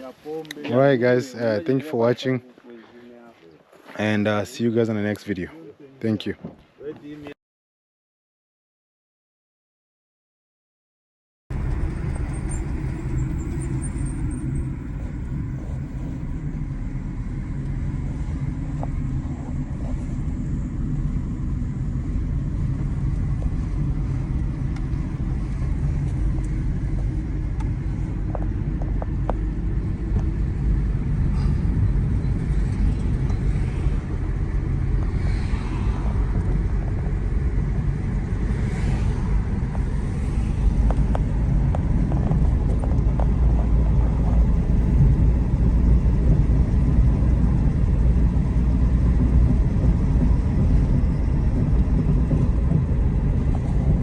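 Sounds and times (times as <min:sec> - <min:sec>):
car engine and road noise: 0:11.5 - 0:54.0.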